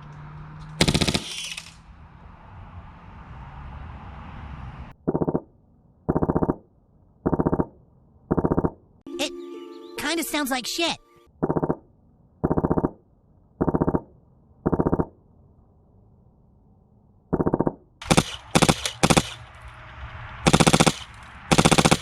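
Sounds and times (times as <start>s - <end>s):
airsoft gun automatic bursts: 0.8s - 1.8s, 17.4s - 19.6s, 20.5s - 22.0s.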